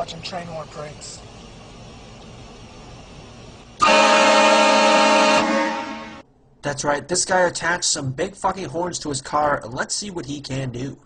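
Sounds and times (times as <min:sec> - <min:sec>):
train horn blast: 0:03.8 - 0:06.2.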